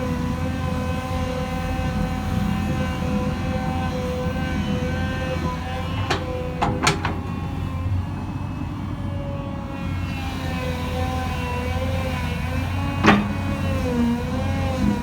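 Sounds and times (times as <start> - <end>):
excavator engine rumbling: 0.0 - 15.0
hydraulic whine: 0.0 - 15.0.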